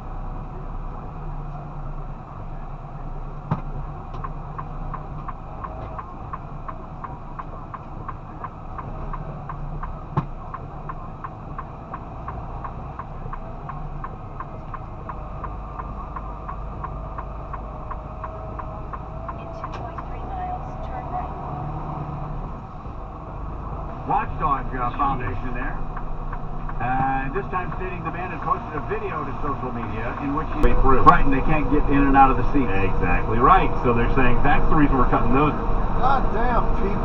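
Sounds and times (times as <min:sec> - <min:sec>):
truck engine and road drone: 0:00.0 - 0:37.0
light regular ticking: 0:04.0 - 0:21.1, 0:25.4 - 0:30.6.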